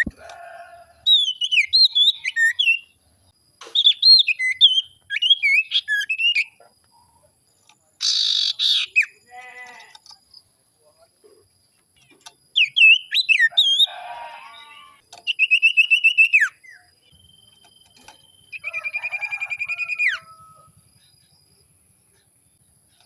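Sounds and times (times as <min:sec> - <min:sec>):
bird singing whistled notes: 0:01.0 - 0:03.0, 0:03.8 - 0:06.6, 0:12.5 - 0:13.9, 0:15.2 - 0:21.3
bird harsh chatter: 0:08.0 - 0:10.0
bird trills: 0:08.0 - 0:10.1.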